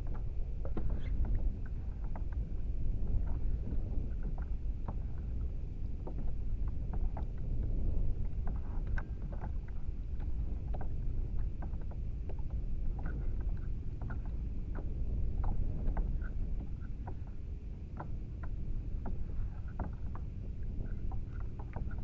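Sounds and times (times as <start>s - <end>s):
steady low rumble: 0.0s - 22.0s
water lapping against hull: 0.0s - 22.0s
small ticks: 8.4s - 22.0s.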